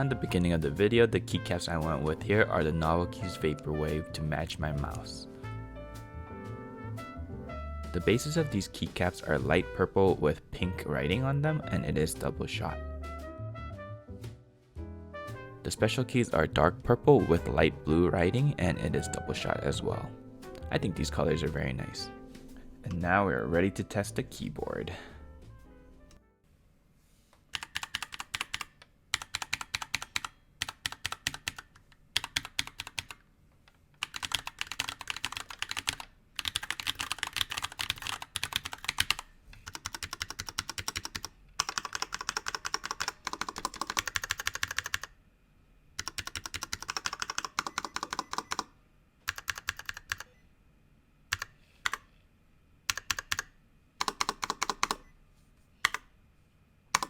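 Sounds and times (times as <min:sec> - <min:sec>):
keyboard keystroke clicks: 0:49.3 - 0:50.3, 0:52.9 - 0:55.1.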